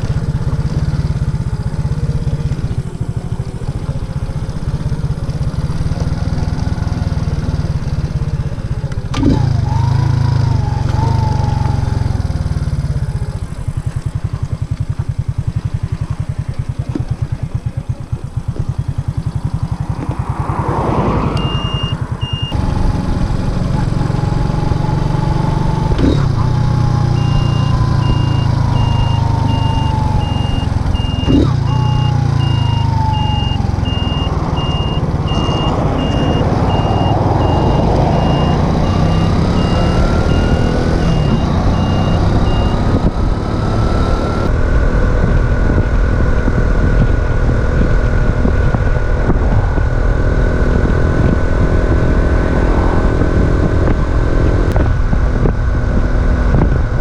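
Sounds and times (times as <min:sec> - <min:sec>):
moped engine running: 0:00.0 - 0:57.0
short high beeps: 0:21.3 - 0:22.6, 0:27.2 - 0:43.0.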